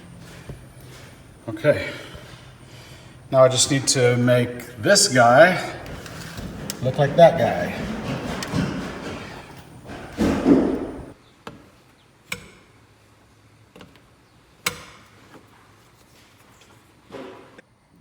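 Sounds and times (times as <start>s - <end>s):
scraping rustle on wood: 5.8s - 11.2s.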